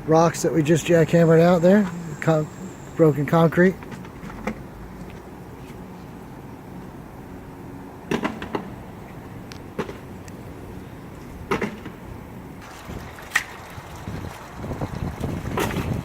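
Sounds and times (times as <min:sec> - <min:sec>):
steady low hum: 0:00.0 - 0:12.6.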